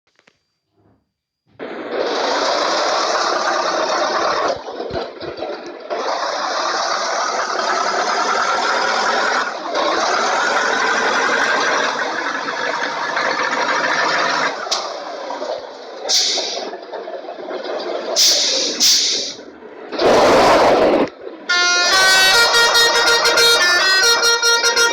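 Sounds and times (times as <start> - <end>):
bus horn blasts: 21.5 - 24.9.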